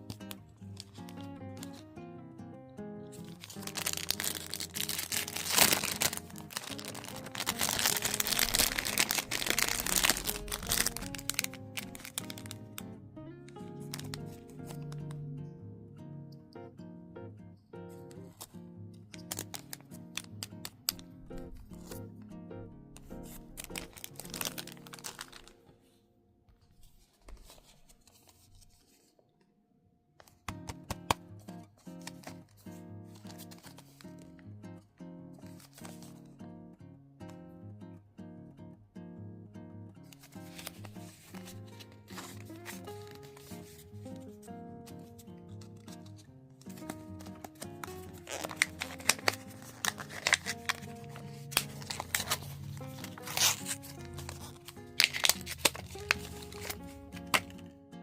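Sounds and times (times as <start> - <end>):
packaging crinkling: 0.0 - 1.9, 3.1 - 15.2, 19.1 - 22.0, 22.9 - 25.7, 31.8 - 34.3, 35.5 - 36.2, 40.2 - 44.4, 45.0 - 57.7
background music: 0.0 - 25.7, 40.2 - 58.0.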